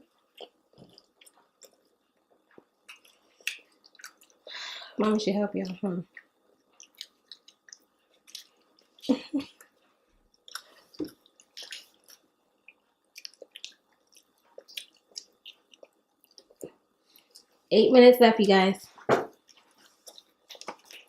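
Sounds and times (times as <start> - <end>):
people chewing with lip smacks: 0.0 - 4.6, 5.6 - 17.6, 19.3 - 21.0.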